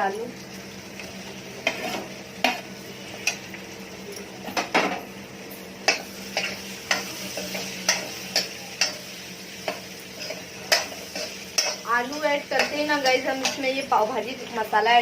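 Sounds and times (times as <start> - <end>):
faint sizzle: 0.0 - 15.0
metal spoon scraping a pan: 1.6 - 3.4, 5.8 - 14.0.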